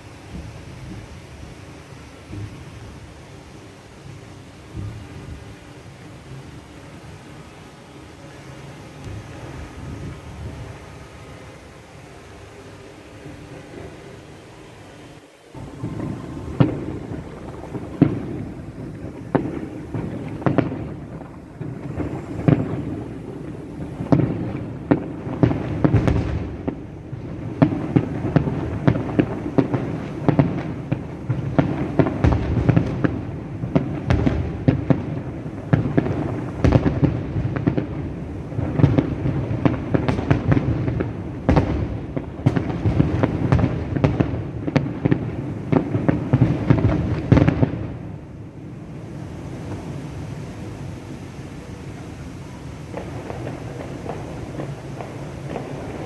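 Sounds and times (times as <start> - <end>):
fireworks bangs and cracks: 0.0 - 14.6, 15.6 - 56.0
low rumble: 8.2 - 24.8.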